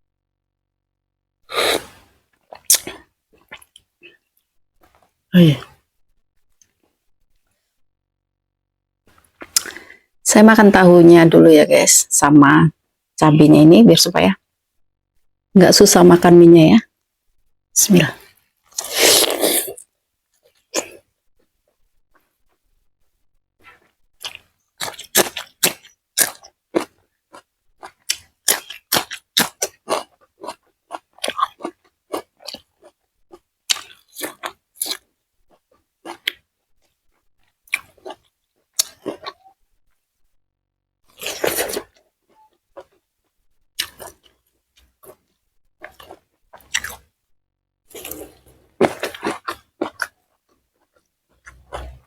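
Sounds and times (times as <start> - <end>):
chewing and crunching food: 2.4 - 5.2, 18.2 - 22.7, 23.6 - 40.0, 41.0 - 47.2, 47.8 - 52.0.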